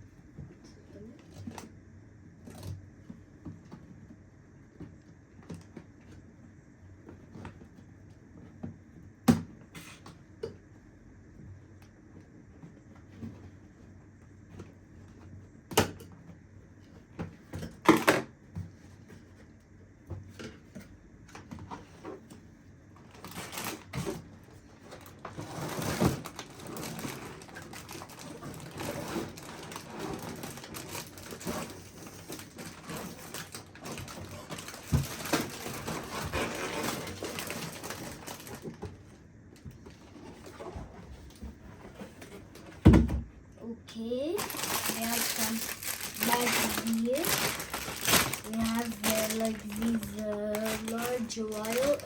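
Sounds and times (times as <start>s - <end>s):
plastic bags rustling and crinkling: 23.0s - 39.0s, 44.0s - 52.0s.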